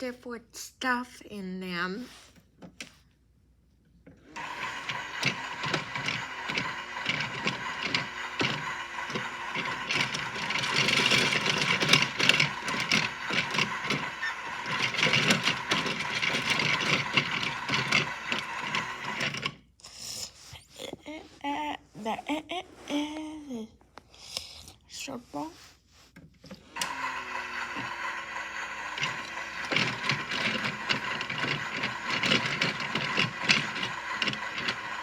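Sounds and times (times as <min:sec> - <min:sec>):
small motor whine: 0:04.2 - 0:19.6, 0:26.7 - 0:35.0
ball rattling and knocking in drum: 0:09.6 - 0:19.5.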